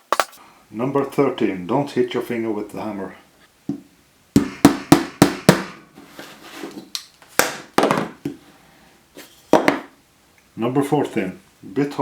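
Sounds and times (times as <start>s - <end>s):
hammer striking nail: 4.4s - 5.8s.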